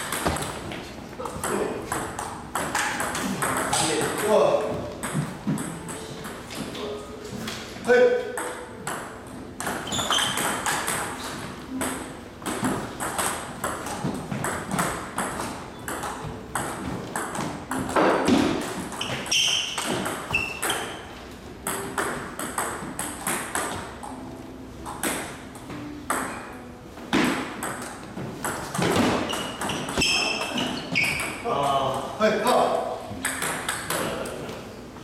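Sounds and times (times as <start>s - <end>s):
short high squeaks: 9.8s - 10.6s, 19.0s - 21.0s, 29.2s - 31.4s
table tennis ball clicks: 33.2s - 34.1s.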